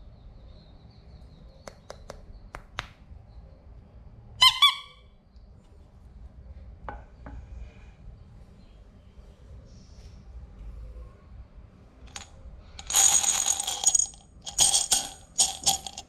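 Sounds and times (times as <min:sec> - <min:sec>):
marbles clicking on wooden run: 0:12.1 - 0:16.0.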